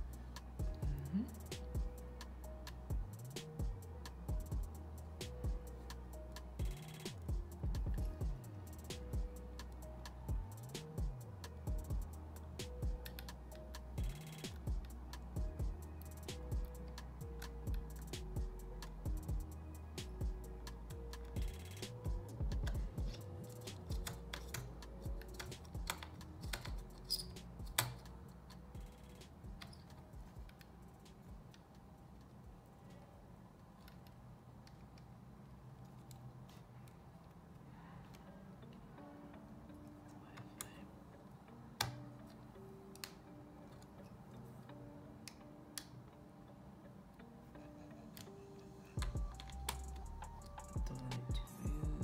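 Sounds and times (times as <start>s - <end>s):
faint background music: 0.0s - 52.0s
sharp clicks and taps: 0.4s - 32.4s, 49.0s - 52.0s.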